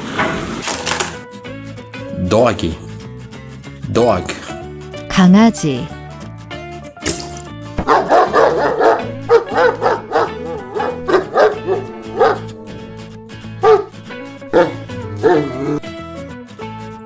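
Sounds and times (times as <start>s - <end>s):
dog barking: 8.0s - 12.5s, 13.6s - 13.9s.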